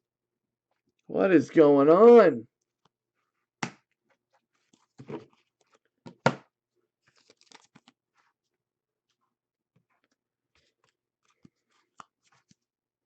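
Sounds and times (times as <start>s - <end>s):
cards and packaging handled: 3.8s - 6.4s, 7.0s - 9.2s, 9.8s - 12.7s.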